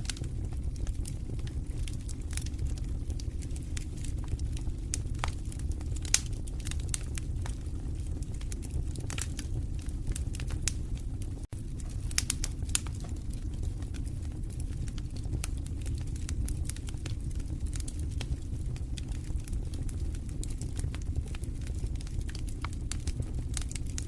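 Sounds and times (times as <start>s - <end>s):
low rumble of flames: 0.0s - 24.0s
wood fire crackling and popping: 0.0s - 24.0s.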